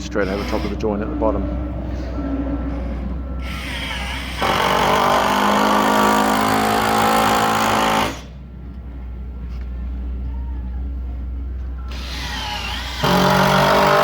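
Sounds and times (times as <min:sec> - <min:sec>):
power drill driving into concrete: 0:11.9 - 0:14.0.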